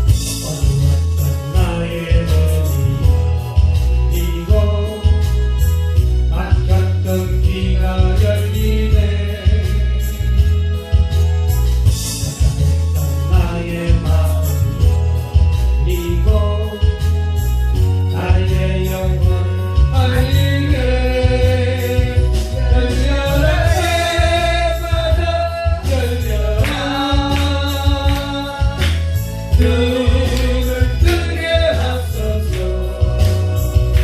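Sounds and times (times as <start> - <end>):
instrumental accompaniment with bass: 0.0 - 34.0
person singing: 18.1 - 34.0.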